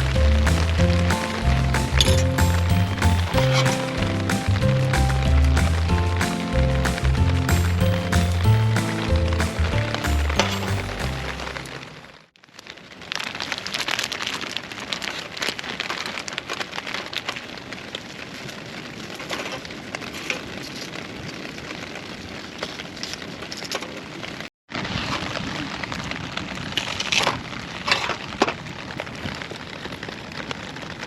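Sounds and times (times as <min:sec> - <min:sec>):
wood fire crackling and popping: 0:00.0 - 0:11.9.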